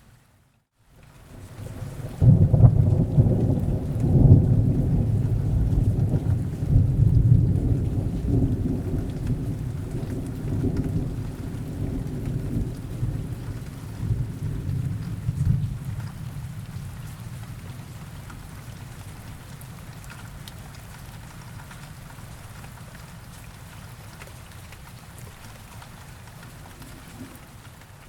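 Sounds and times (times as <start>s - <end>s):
steady rain: 0.0s - 28.0s
rolling thunder: 1.6s - 17.9s.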